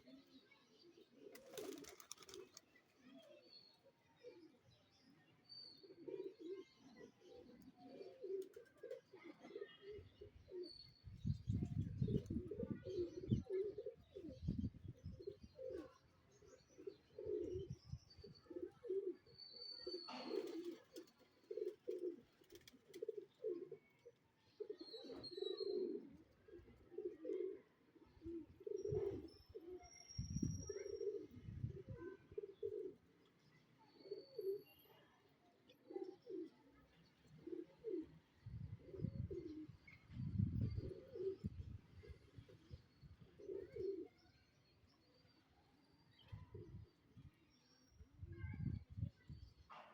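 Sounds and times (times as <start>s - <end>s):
pigeons cooing: 5.8s - 10.8s, 11.9s - 16.0s, 16.8s - 23.9s, 24.5s - 29.8s, 30.7s - 33.1s, 35.8s - 36.7s, 37.3s - 44.2s.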